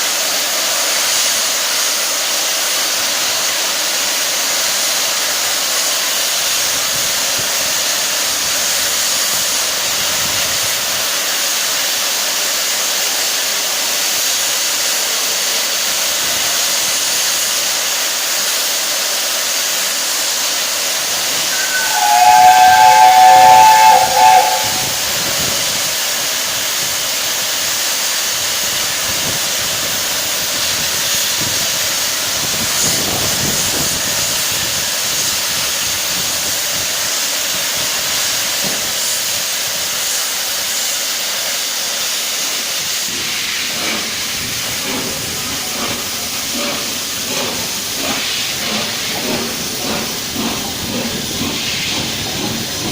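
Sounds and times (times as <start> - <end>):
steam hissing: 0.0 - 52.9
steam locomotive whistle chord: 21.2 - 25.7.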